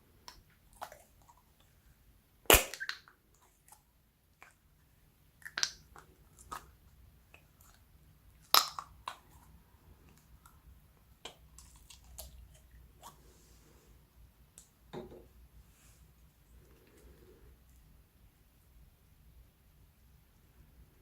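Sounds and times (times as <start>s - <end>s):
slime squishing with sticky pops: 8.4s - 9.6s.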